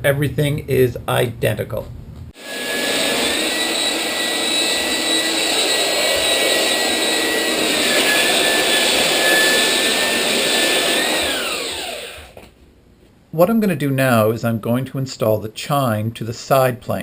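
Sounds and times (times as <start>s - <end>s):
belt sander sanding wood: 2.4s - 12.4s
high whine: 2.4s - 12.5s.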